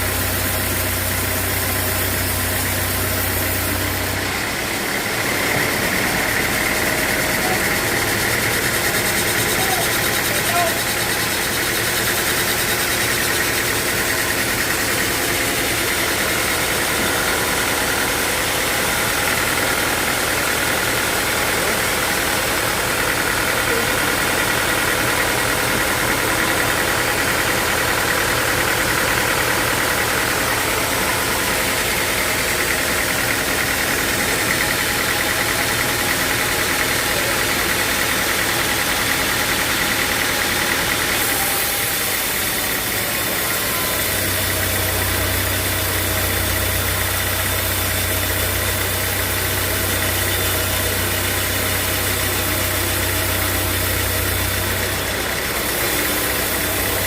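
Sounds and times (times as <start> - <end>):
sawmill machinery humming: 0.0 - 57.0.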